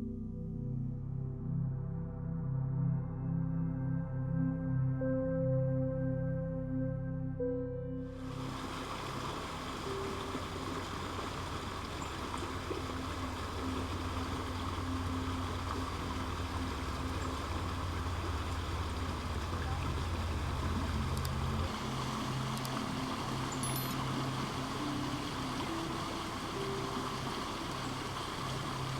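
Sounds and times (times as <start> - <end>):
low hum: 0.0 - 28.9
creek water rushing: 8.2 - 28.9.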